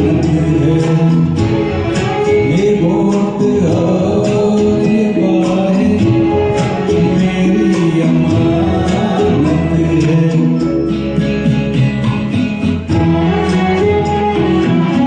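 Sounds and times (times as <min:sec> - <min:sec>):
man singing karaoke: 0:00.0 - 0:11.9
recorded backing track: 0:00.0 - 0:15.0.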